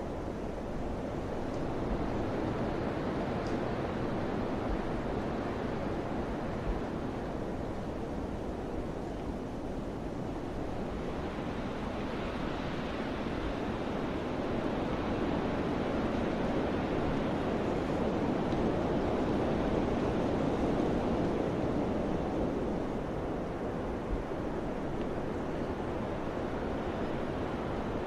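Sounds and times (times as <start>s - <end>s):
wind blowing hard: 0.0s - 28.0s.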